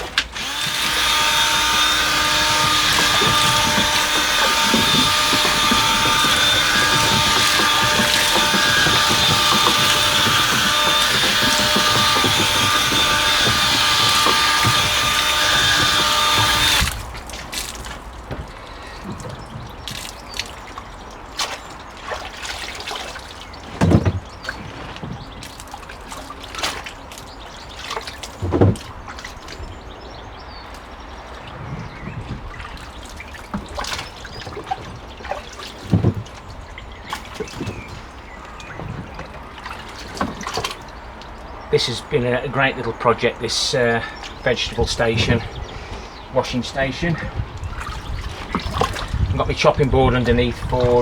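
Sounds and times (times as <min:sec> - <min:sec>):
dull knocks: 0:00.0 - 0:20.7, 0:21.4 - 0:29.7, 0:30.7 - 0:41.5
water running into tub: 0:00.0 - 0:51.0
water trickling and splashing: 0:00.0 - 0:51.0.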